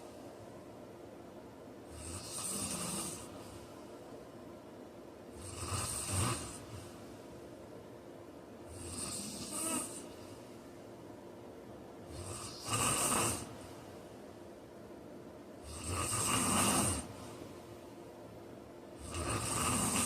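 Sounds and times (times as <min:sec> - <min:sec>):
faint steady hum: 0:00.0 - 0:20.0
man snoring: 0:01.9 - 0:03.3, 0:05.4 - 0:06.7, 0:08.7 - 0:10.0, 0:12.1 - 0:13.5, 0:15.6 - 0:17.2, 0:19.0 - 0:20.0.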